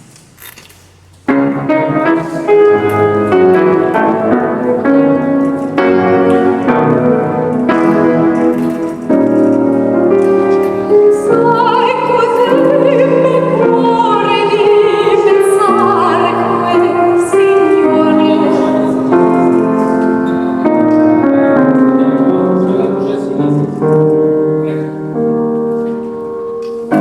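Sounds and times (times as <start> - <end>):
piano accompaniment: 1.1 - 27.0
soprano singing opera: 11.0 - 20.0.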